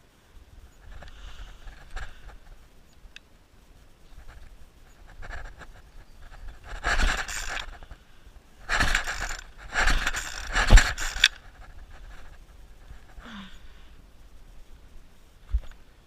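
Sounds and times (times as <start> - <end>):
small engine cranking: 6.6 - 8.0, 8.7 - 11.4.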